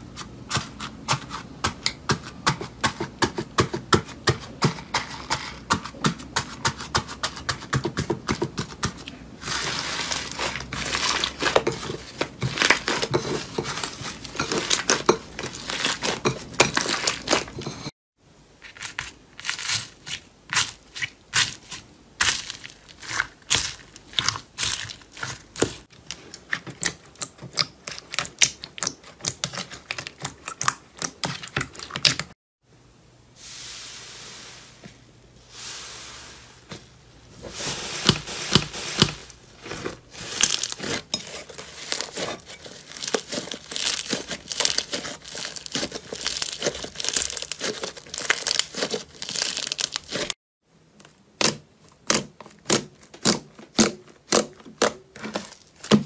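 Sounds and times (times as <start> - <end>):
slime crackling and popping: 40.4 - 50.3.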